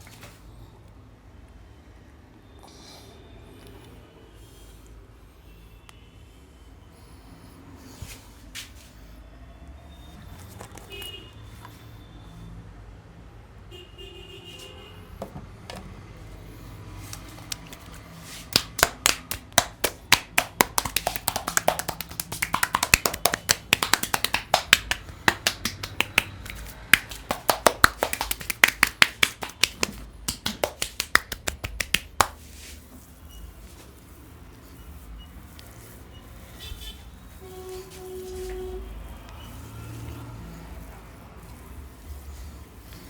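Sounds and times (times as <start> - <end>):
hands cracking in head massage: 17.0 - 32.7.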